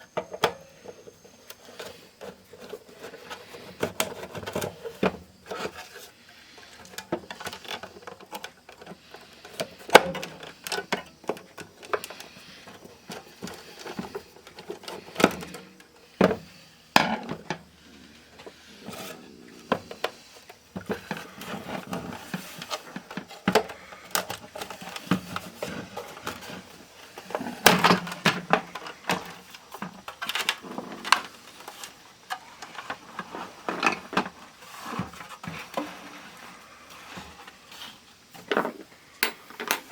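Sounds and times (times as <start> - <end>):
clicks and taps of handled parts: 39.2 - 39.9.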